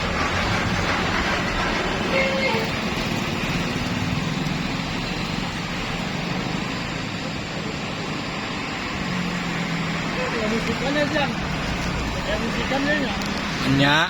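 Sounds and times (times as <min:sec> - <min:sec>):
bus engine running: 0:00.0 - 0:14.0
road and traffic noise: 0:00.0 - 0:14.0.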